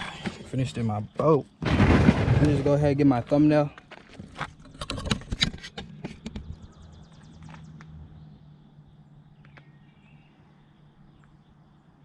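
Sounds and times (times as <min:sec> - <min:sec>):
sharp knocks and clicks: 0:04.4 - 0:08.0.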